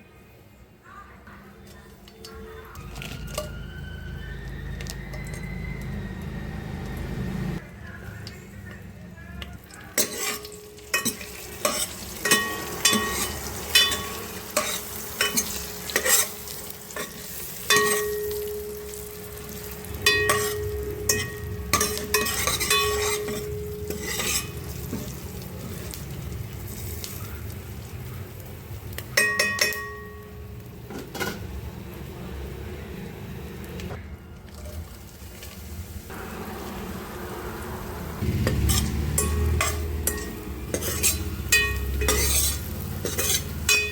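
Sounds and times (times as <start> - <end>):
frying sizzle: 1.5 - 43.9
metal spoon scraping pan: 9.9 - 18.5, 20.0 - 26.0, 38.3 - 43.9
spoon knocking ringing pan: 10.3 - 16.2, 17.0 - 19.3, 19.9 - 24.6, 29.1 - 30.5, 38.7 - 42.5, 43.6 - 43.9.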